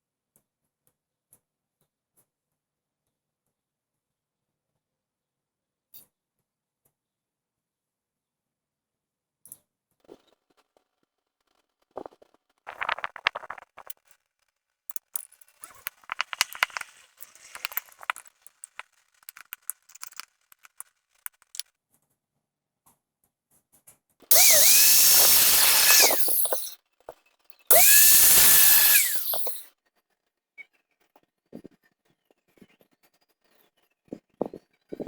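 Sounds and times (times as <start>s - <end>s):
handling clicks: 15.9s - 21.6s
light scraping: 15.9s - 21.6s
electric drill whining: 16.0s - 20.2s, 24.3s - 26.8s, 27.7s - 29.6s.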